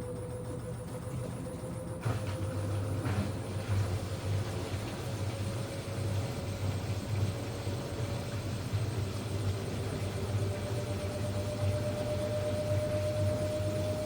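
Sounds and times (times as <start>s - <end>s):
washing machine spinning hum: 0.0s - 14.0s.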